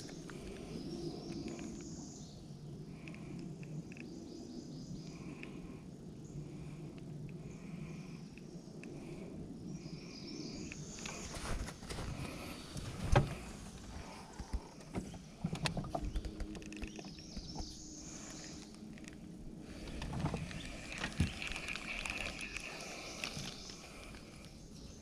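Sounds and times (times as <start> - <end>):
faint outdoor background: 0.0 - 25.0
fishing gear knocking and clicking: 14.4 - 17.7.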